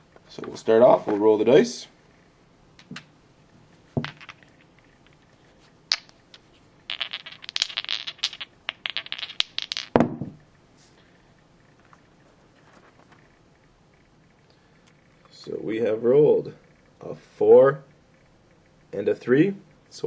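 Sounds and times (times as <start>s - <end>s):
dice clattering: 2.8s - 3.1s, 4.0s - 10.4s.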